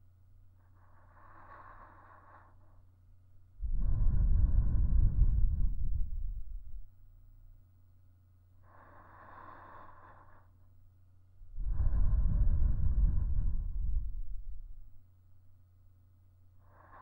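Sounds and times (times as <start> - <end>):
faint steady hum: 0.0 - 17.0
breath gusting against microphone: 3.6 - 6.8, 11.5 - 14.9.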